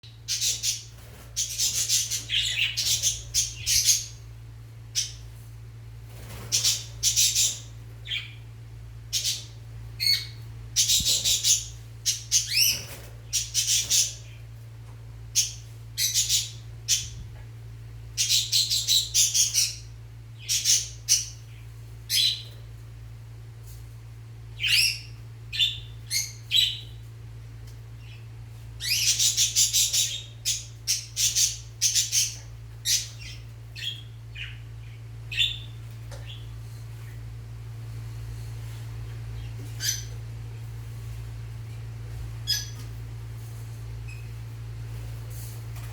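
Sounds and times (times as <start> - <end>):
lovebirds chirping and squawking: 0.0 - 5.4, 6.1 - 14.6, 15.3 - 17.4, 18.1 - 22.6, 24.5 - 27.1, 28.0 - 37.3, 39.2 - 40.3, 42.4 - 43.0, 43.6 - 44.5
faint low hum: 0.0 - 45.9.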